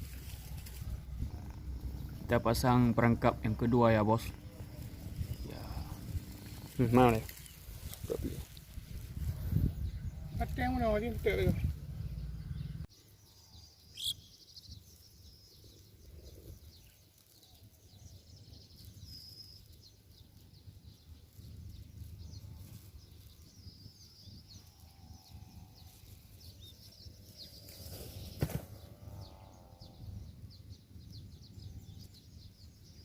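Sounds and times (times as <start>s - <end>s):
low wind rumble: 0.0s - 12.9s, 20.5s - 33.0s
faint birds chirping: 0.0s - 33.0s.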